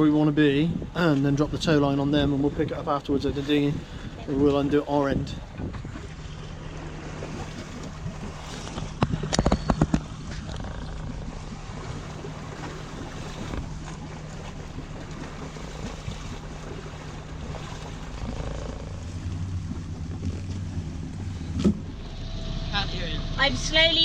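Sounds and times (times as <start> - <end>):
boat engine running: 0.0 - 24.0
water noise: 0.0 - 24.0
wind: 0.0 - 24.0.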